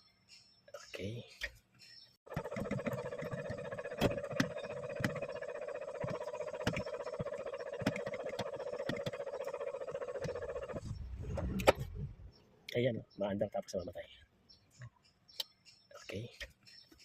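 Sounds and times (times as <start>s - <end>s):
starter motor cranking engine: 2.3s - 12.1s.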